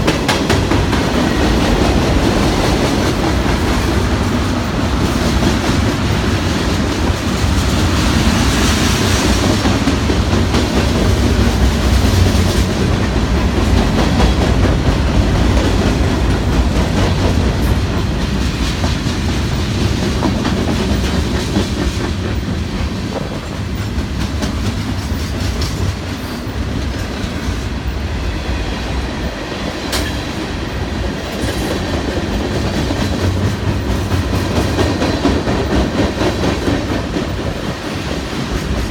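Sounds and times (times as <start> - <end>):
freight train wheels rumbling: 0.0 - 38.9.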